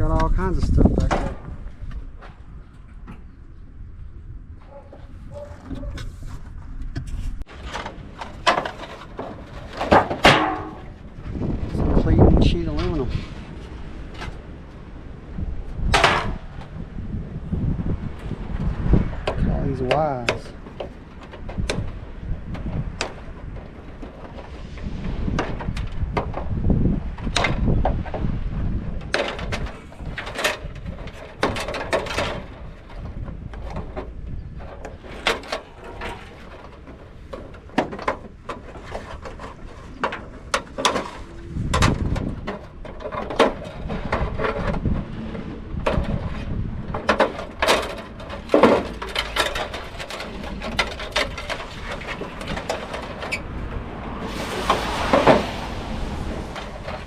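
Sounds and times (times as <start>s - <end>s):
scrap metal clanking: 4.7s - 14.5s, 29.1s - 57.0s
metal scraping: 4.7s - 14.6s, 47.1s - 57.0s.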